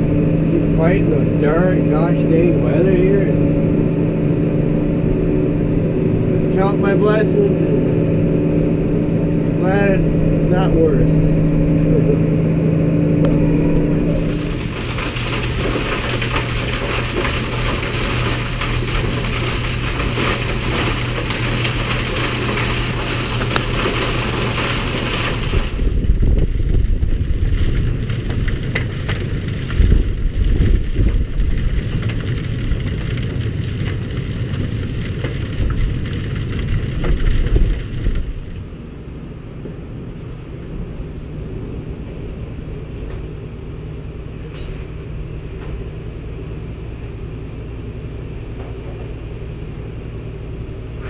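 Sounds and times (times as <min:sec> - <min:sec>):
low gusty rumbling: 0:00.0 - 0:44.4
tractor engine running: 0:00.0 - 0:51.0
wind gusts buffeting microphone: 0:25.5 - 0:38.5.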